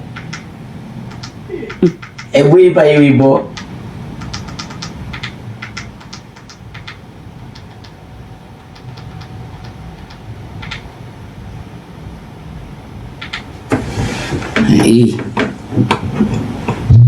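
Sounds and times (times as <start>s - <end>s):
low background rumble: 0.0s - 17.0s
light clicks: 3.6s - 8.0s.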